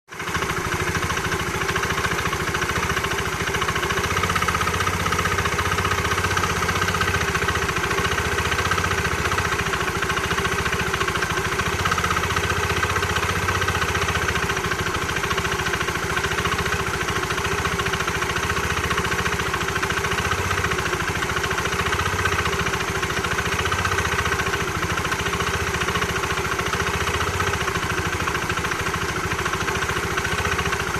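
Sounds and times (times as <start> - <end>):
engine idling: 0.1 - 30.9.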